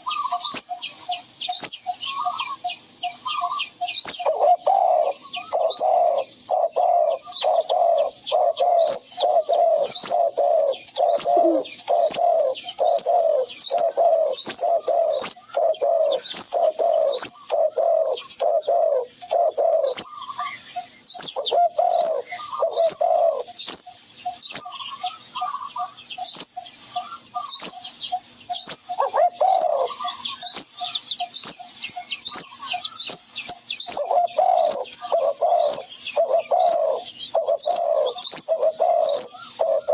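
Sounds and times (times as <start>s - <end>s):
low cooing notes: 4.3s - 20.0s.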